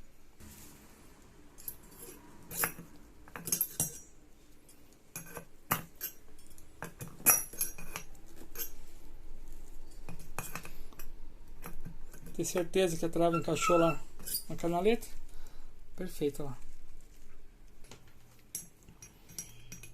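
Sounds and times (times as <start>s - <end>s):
metallic clicks and clinks of tools: 1.6s - 8.8s, 18.5s - 19.9s.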